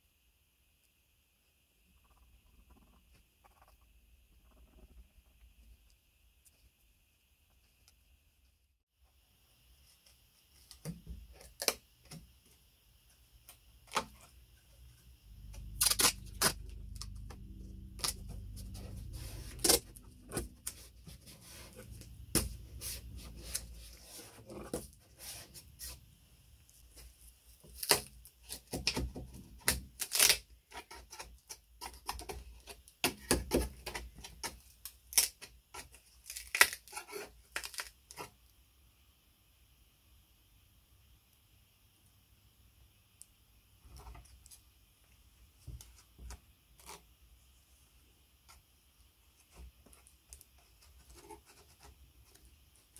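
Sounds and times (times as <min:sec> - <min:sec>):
low hum: 0:14.9 - 0:23.8.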